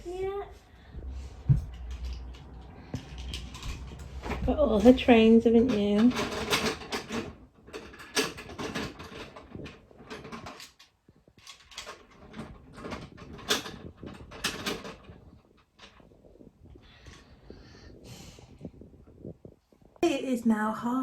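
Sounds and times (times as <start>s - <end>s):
plastic toy trains clattering: 1.7s - 16.1s.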